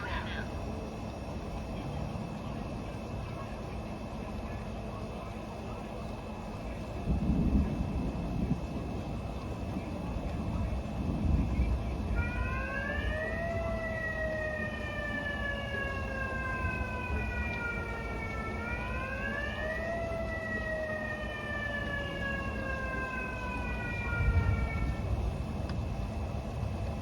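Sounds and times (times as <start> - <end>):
low rumble: 6.6 - 27.0
megaphone siren wailing: 12.0 - 25.2.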